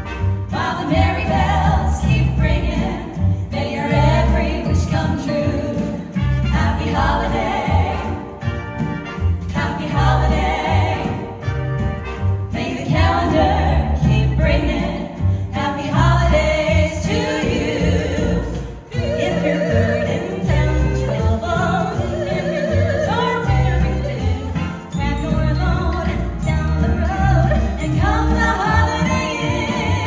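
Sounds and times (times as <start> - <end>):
rhythmic bass: 0.0 - 30.0
vocal group singing in harmony: 0.5 - 8.5, 9.5 - 11.6, 12.5 - 30.0
sleigh bells ringing: 15.9 - 30.0.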